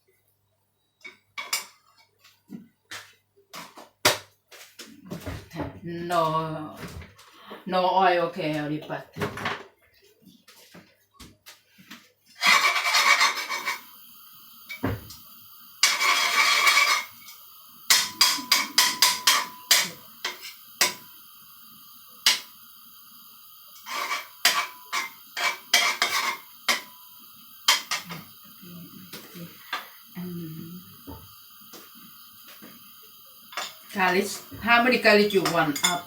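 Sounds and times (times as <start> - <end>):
utensils scraping cookware: 12.3 - 14.0, 15.8 - 21.1, 23.8 - 27.1, 27.7 - 28.3, 33.5 - 36.0.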